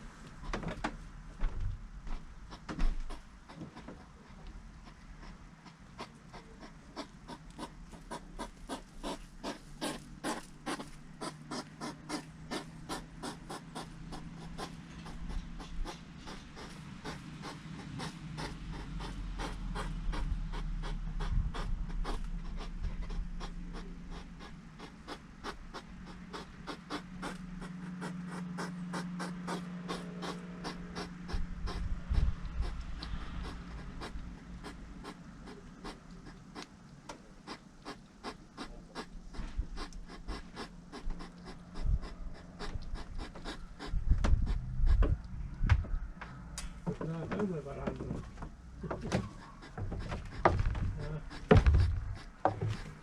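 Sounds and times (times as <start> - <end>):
hedgehogs crunching seeds: 2.5 - 44.7
low hum: 41.6 - 53.0.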